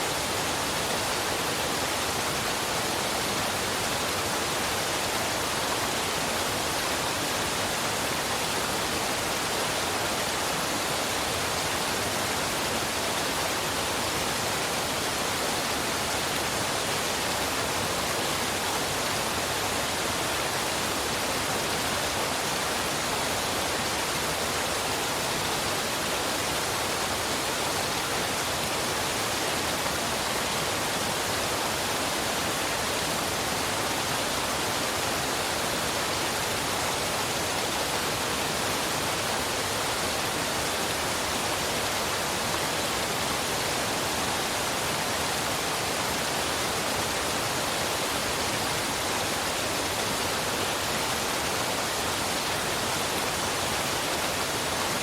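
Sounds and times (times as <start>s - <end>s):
waterfall and river rushing: 0.0s - 55.0s.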